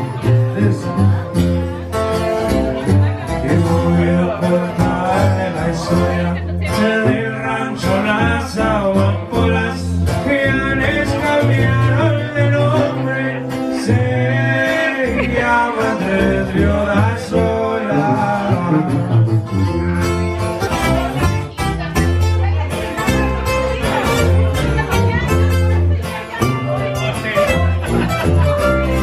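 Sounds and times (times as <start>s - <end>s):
bass line: 0.0s - 29.0s
guitar: 0.0s - 29.0s
person singing: 3.3s - 20.3s.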